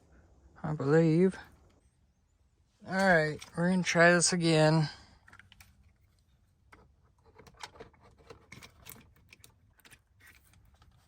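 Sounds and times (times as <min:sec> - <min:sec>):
faint clicks and taps of parts: 0:05.2 - 0:11.0.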